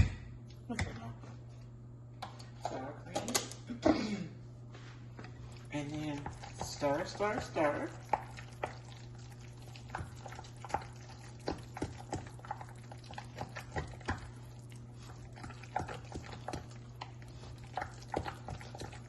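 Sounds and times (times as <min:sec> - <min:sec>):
steady low hum: 0:00.0 - 0:19.0
spoon stirring mashed potatoes: 0:04.8 - 0:19.0.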